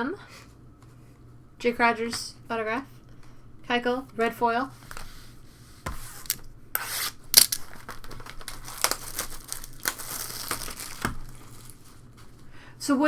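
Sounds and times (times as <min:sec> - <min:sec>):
wrapper crinkling: 0:07.0 - 0:12.5.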